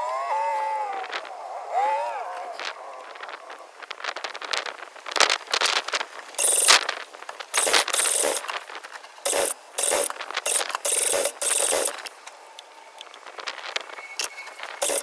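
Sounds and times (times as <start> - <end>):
cordless power tool whining: 6.4 - 6.8, 7.6 - 8.5, 9.3 - 12.1, 14.8 - 15.0.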